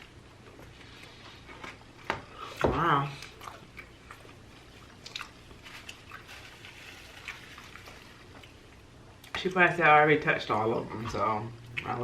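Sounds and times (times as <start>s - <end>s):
people chewing: 0.0s - 9.4s
low steady hum: 0.0s - 12.0s.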